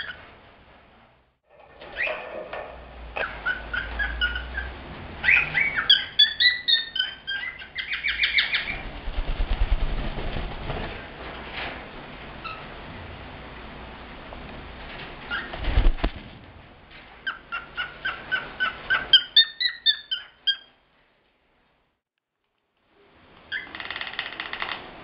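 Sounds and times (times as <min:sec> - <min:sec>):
cockatiel singing and calling: 0:00.0 - 0:00.2, 0:03.2 - 0:08.8, 0:15.3 - 0:15.6, 0:17.2 - 0:20.7, 0:23.5 - 0:24.3.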